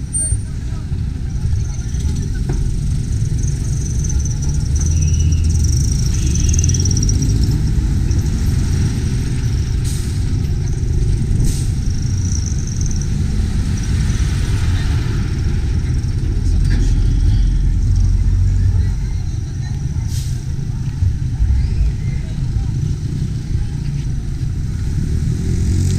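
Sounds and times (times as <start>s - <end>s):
traffic rumble: 0.0s - 25.9s.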